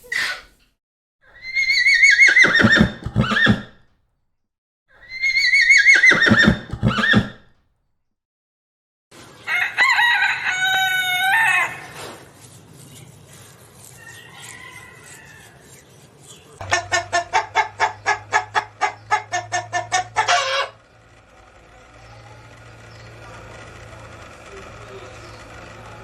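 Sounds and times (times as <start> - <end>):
chicken clucking rapidly: 5.9 - 7.3, 14.0 - 15.7, 16.6 - 20.8
rooster crowing: 9.4 - 12.0, 13.8 - 15.9, 16.7 - 20.8.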